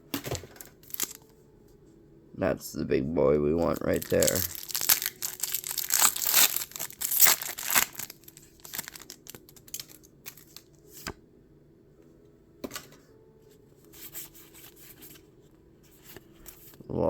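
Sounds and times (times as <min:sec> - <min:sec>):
foil wrapper tearing and crinkling: 0:00.8 - 0:01.2, 0:03.7 - 0:10.7.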